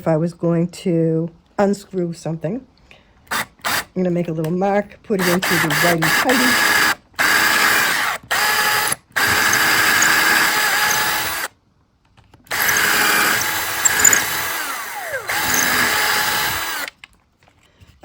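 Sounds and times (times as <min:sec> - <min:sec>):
electric drill running: 0:05.2 - 0:11.5, 0:12.5 - 0:16.9.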